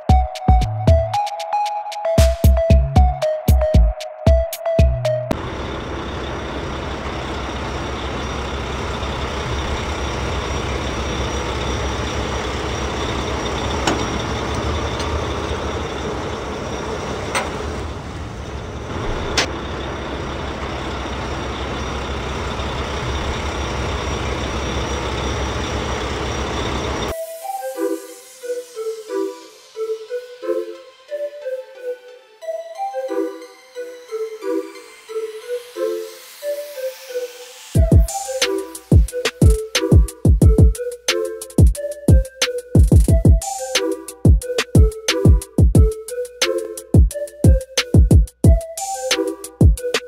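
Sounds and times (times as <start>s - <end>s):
engine running: 5.3s - 27.1s.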